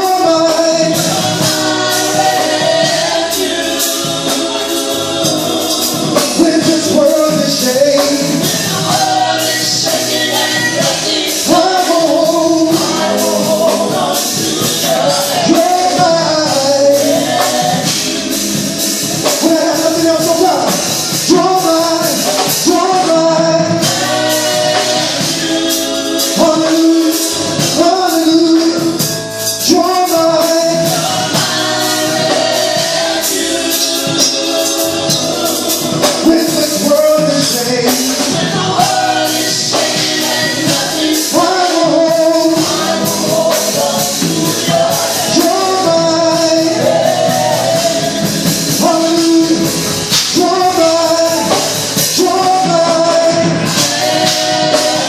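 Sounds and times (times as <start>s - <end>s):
choir singing with a band: 0.0s - 55.0s.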